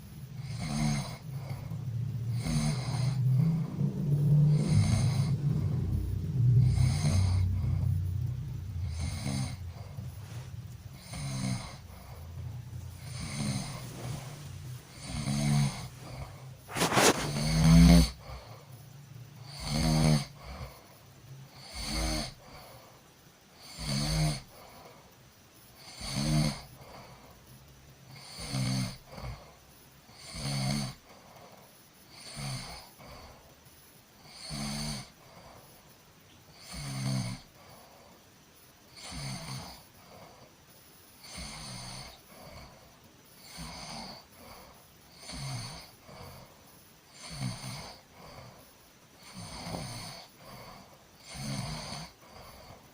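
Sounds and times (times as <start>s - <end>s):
person snoring: 0.3s - 18.7s, 19.4s - 20.9s, 21.5s - 22.9s, 23.6s - 24.9s, 25.8s - 27.3s, 28.1s - 29.5s, 30.1s - 31.1s, 32.1s - 33.4s, 34.2s - 35.5s, 36.6s - 37.8s, 39.0s - 40.5s, 41.2s - 46.5s, 47.1s - 48.6s, 49.2s - 52.9s.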